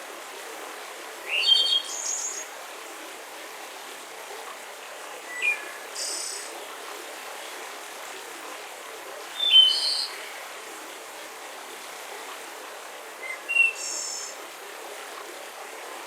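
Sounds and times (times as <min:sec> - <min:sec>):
songbirds calling: 0:09.4 - 0:10.2.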